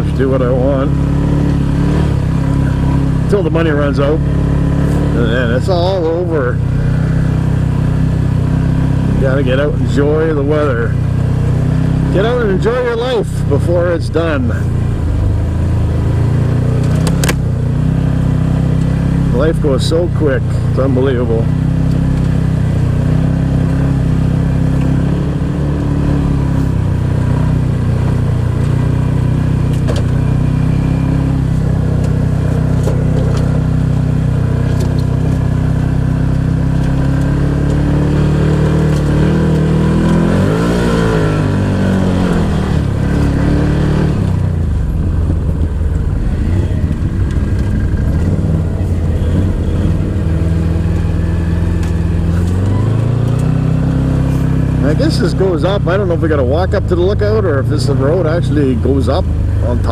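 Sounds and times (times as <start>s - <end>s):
off-road vehicle engine revving: 0.0s - 59.9s.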